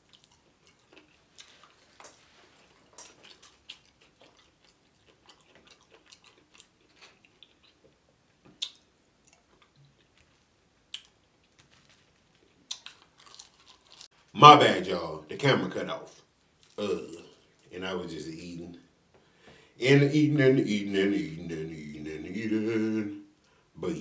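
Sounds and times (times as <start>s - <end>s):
chewing fried chicken: 0.0s - 14.2s, 16.1s - 17.8s
mouth clicks: 8.6s - 8.9s.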